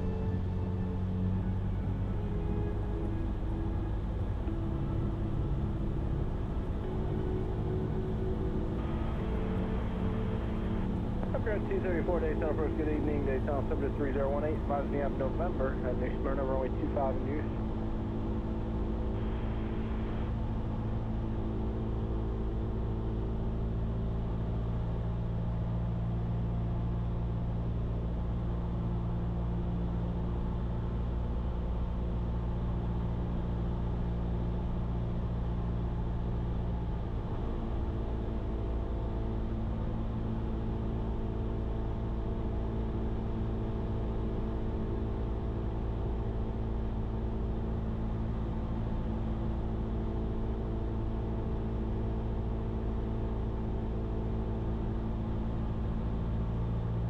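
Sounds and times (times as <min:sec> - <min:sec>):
propeller plane engine droning: 0:00.0 - 0:57.0.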